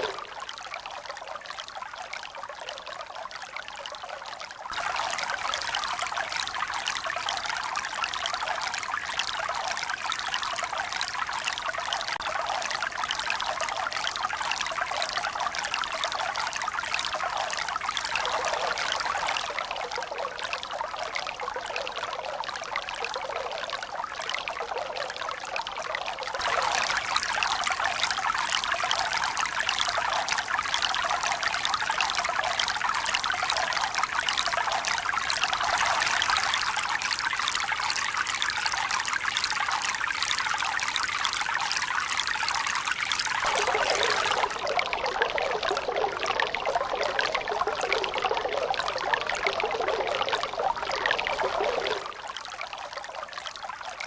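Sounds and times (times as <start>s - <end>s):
running water rushing: 0.0s - 0.5s, 26.4s - 32.0s, 42.5s - 45.1s.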